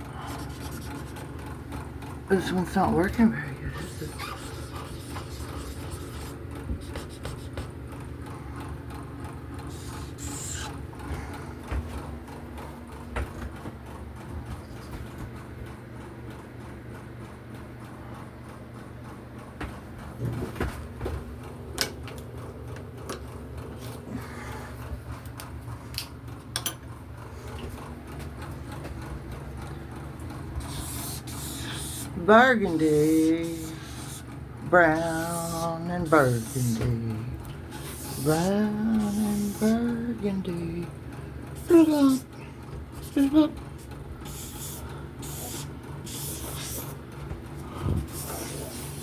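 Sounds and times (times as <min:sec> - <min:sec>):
steady low hum: 0:00.0 - 0:49.0
scraping strokes on surface: 0:37.7 - 0:39.8.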